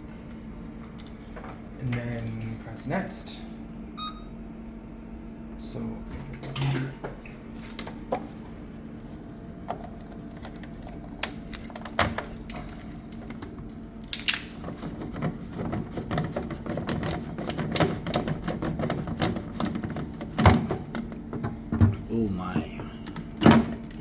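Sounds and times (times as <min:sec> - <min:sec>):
steady low hum: 0:00.0 - 0:14.1, 0:19.5 - 0:24.0.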